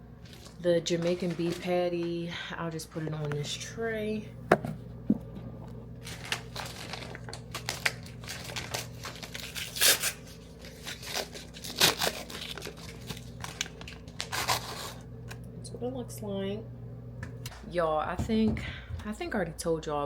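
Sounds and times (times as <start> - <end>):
packaging being torn and crinkled: 6.0 - 15.4.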